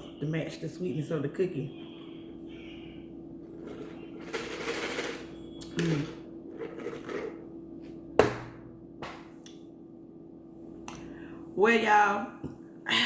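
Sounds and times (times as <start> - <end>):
steady low hum: 0.0 - 12.9.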